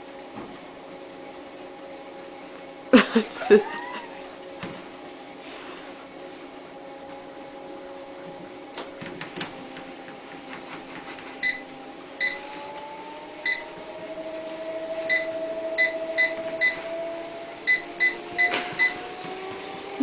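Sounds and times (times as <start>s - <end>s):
faint steady hum: 0.0s - 20.0s
short electronic beeps: 17.7s - 19.0s.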